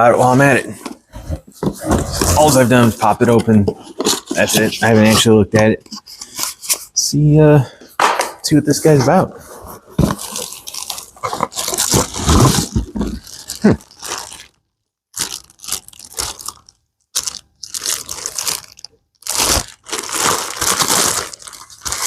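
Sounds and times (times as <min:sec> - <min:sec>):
packaging crinkling and tearing: 0:10.0 - 0:22.0.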